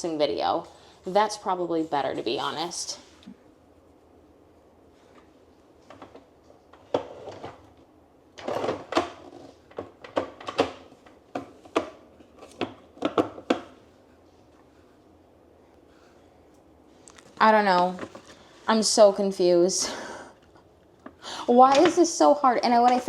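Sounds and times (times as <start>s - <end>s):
plastic parts knocking and clicking: 8.4s - 13.8s.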